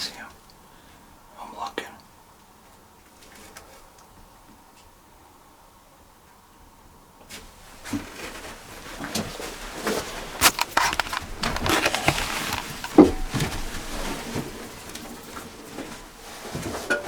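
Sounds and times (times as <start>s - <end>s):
rustling and scraping of gear: 7.3s - 17.0s.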